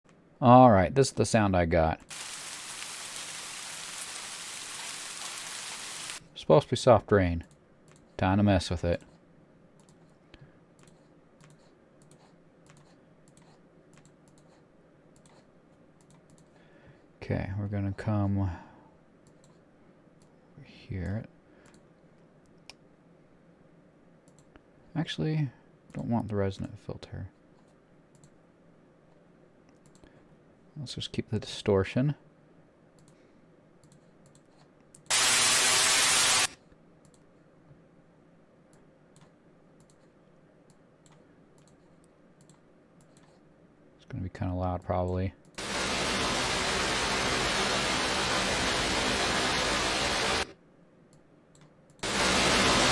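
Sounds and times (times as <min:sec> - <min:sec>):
distorted rain hiss: 0:02.1 - 0:06.2, 0:35.1 - 0:36.5, 0:45.6 - 0:50.4, 0:52.0 - 0:52.9
keyboard and mouse clicks: 0:07.4 - 0:08.1, 0:09.8 - 0:10.2, 0:10.8 - 0:16.5, 0:21.6 - 0:22.8, 0:27.6 - 0:28.4, 0:29.7 - 0:30.1, 0:33.8 - 0:35.1, 0:37.0 - 0:37.3, 0:38.7 - 0:40.1, 0:40.7 - 0:43.4, 0:51.1 - 0:52.0.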